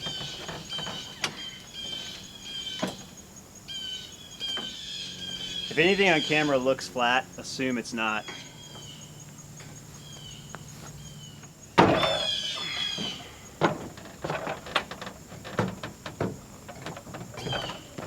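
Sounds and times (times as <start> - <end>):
squealing scrape: 11.0 - 15.8, 16.8 - 18.0
heavy equipment knocks and clunks: 11.7 - 18.0.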